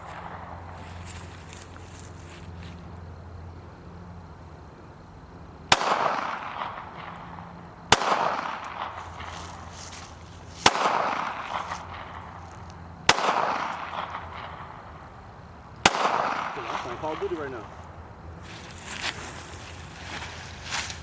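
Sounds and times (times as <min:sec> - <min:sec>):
pistol shots echoing: 0:05.7 - 0:09.3, 0:10.6 - 0:12.4, 0:13.1 - 0:14.8, 0:15.8 - 0:17.7.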